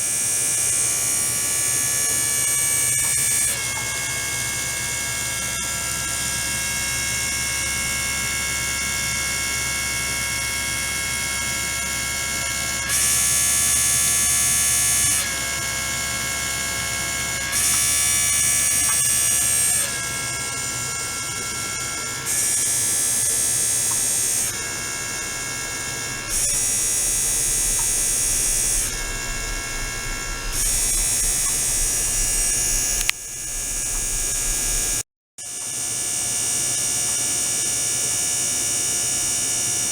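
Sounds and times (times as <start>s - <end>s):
ultrasonic tank buzz: 9.8s - 35.0s
pump hissing: 22.3s - 35.0s.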